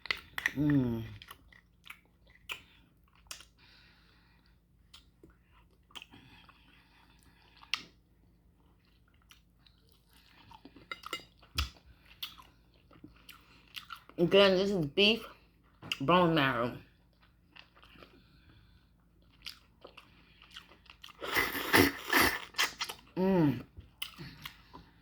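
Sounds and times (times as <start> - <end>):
quiet chewing: 0.0 - 14.2, 17.0 - 21.3, 23.8 - 25.0.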